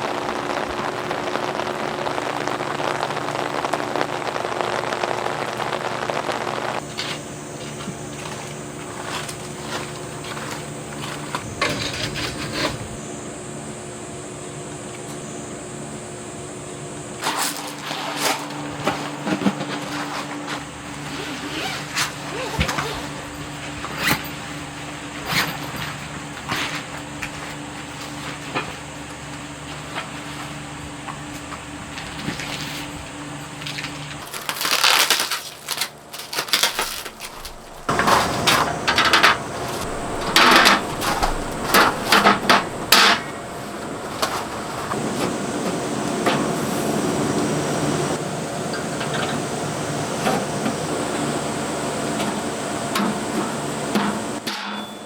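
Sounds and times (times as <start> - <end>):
background hiss: 0.0 - 6.9, 8.5 - 14.6, 34.2 - 54.4.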